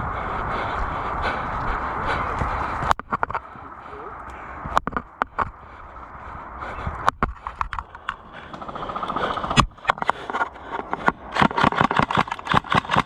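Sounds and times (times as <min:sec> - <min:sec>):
gear knocking: 0:07.0 - 0:13.0.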